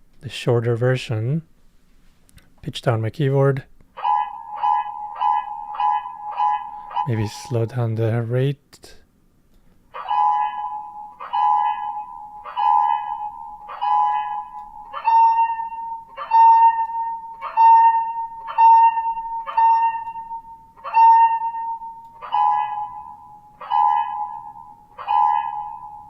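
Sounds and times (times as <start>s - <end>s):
pulsing sci-fi alarm tone: 4.0s - 7.5s, 10.0s - 26.0s.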